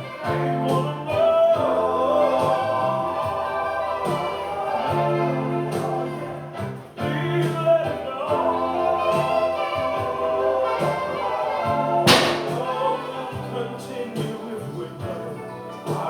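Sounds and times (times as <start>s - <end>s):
gospel choir singing: 0.0s - 16.0s
cymbal crash: 12.1s - 13.1s.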